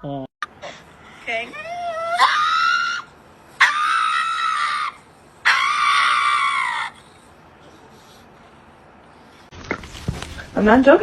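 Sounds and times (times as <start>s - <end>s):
high-pitched screams: 1.6s - 7.0s.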